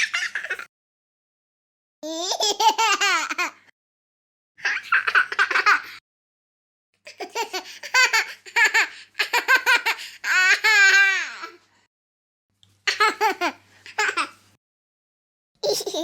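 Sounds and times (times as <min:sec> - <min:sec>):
baby laughing: 0:00.0 - 0:00.7, 0:02.0 - 0:03.6, 0:04.6 - 0:06.0, 0:07.1 - 0:11.6, 0:12.9 - 0:14.4, 0:15.6 - 0:16.0.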